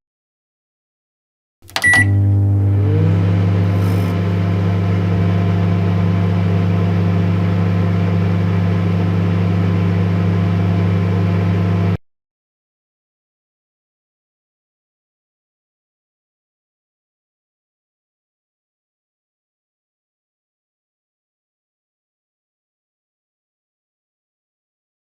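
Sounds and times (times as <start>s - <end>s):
microwave short beep: 1.6s - 2.9s
microwave oven click: 1.6s - 4.3s
microwave oven humming: 1.6s - 12.0s.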